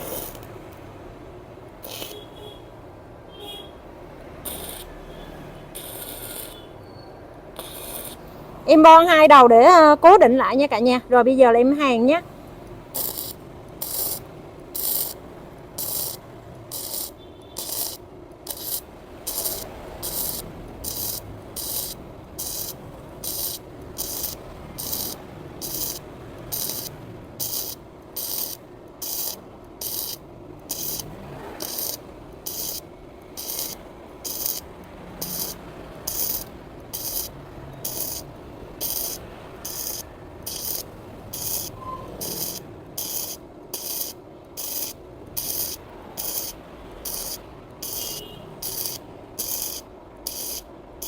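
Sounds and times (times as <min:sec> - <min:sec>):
welding arc crackling: 0:00.0 - 0:00.8, 0:01.8 - 0:02.6, 0:04.4 - 0:06.7, 0:07.6 - 0:10.8, 0:11.6 - 0:51.0.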